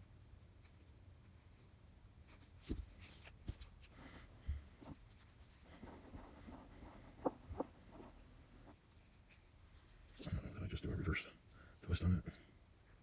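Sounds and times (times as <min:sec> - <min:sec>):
scratchy rubbing of cord: 0:04.8 - 0:10.4.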